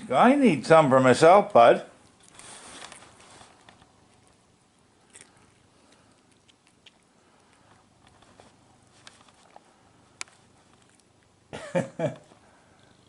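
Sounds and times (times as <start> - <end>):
cat crunching bacon: 2.0 - 11.5.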